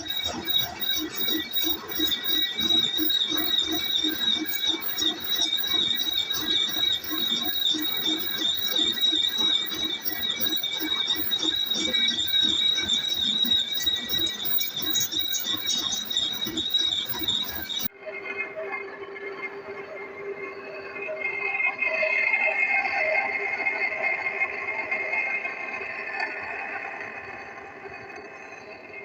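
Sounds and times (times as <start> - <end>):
low pulsing machine hum: 0.0 - 17.9
lathe tool high-pitched squeal: 0.0 - 29.0.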